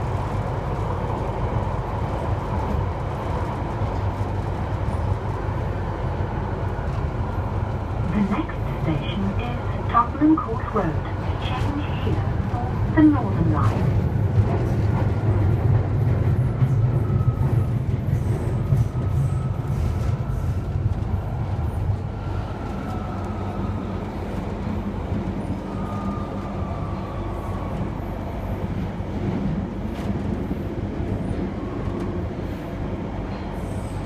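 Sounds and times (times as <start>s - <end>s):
train rumbling through tunnel: 0.0s - 34.0s
train wheel squeals: 16.5s - 20.7s.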